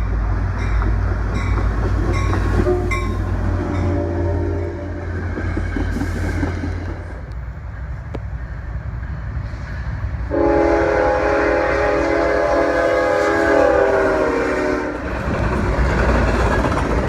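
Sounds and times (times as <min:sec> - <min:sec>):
diesel locomotive rumbling: 0:00.0 - 0:17.0
train air horn chord: 0:03.8 - 0:05.1, 0:10.3 - 0:15.0.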